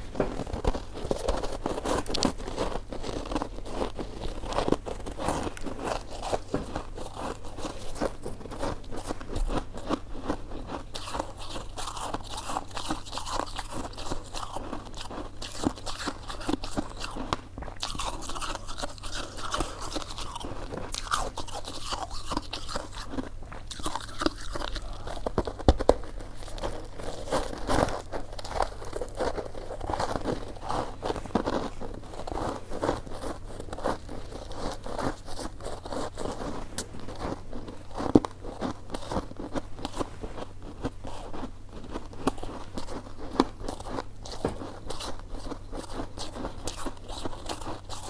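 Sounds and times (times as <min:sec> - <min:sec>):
chewing rice cake: 0:00.0 - 0:48.0.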